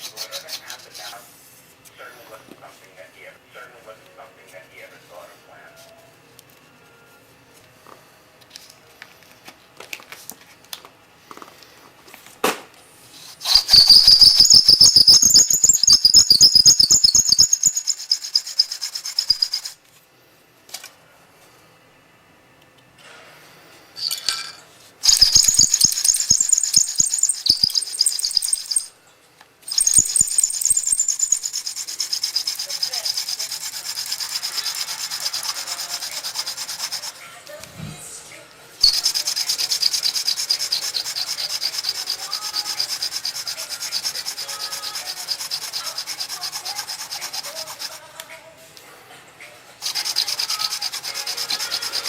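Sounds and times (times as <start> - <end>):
hand drill scraping fireboard: 0.0 - 1.3, 13.2 - 19.8, 24.0 - 28.9, 29.7 - 37.2, 38.8 - 48.3, 49.8 - 52.0.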